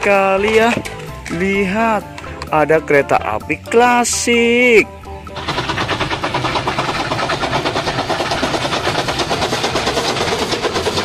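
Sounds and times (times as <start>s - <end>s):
toy train chugging: 5.3s - 11.0s.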